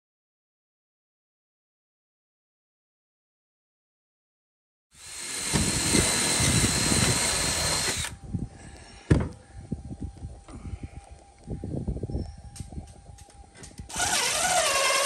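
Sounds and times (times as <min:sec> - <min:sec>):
power drill running: 0:05.0 - 0:08.2, 0:13.9 - 0:15.0.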